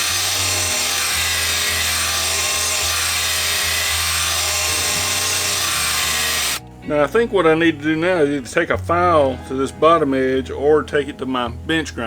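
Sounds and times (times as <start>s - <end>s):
blade sharpener grinding steel: 0.0s - 6.6s.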